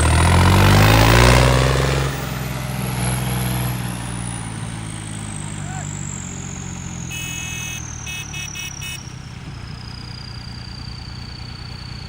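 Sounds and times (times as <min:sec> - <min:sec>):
tractor engine running: 0:00.0 - 0:12.0
high whine: 0:06.9 - 0:11.8
short beeps: 0:07.0 - 0:09.2.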